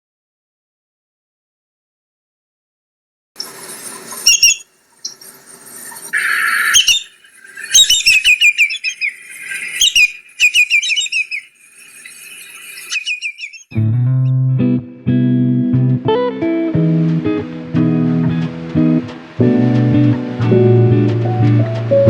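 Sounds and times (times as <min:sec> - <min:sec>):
bird whistling calls: 0:03.4 - 0:13.8.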